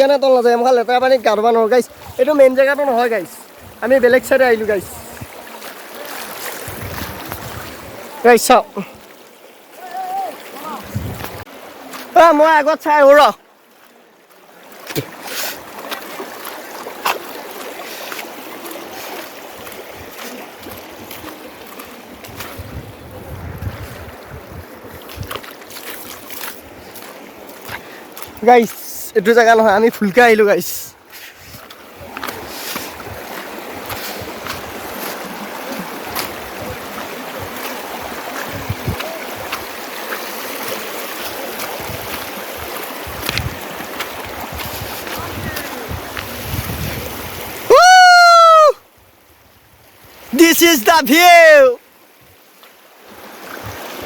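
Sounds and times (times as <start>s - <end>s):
stream water rushing: 0.0s - 54.0s
wind buffeting microphone: 6.6s - 8.1s, 10.8s - 11.5s, 22.1s - 25.4s, 36.0s - 39.7s, 41.7s - 47.7s.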